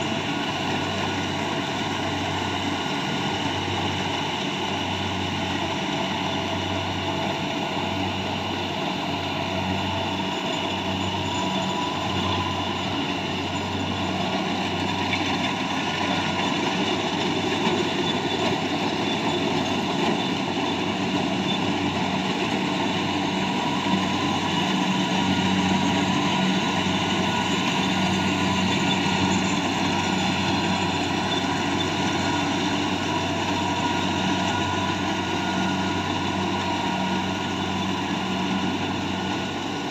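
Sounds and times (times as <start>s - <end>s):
harvester engine running: 0.0s - 39.9s.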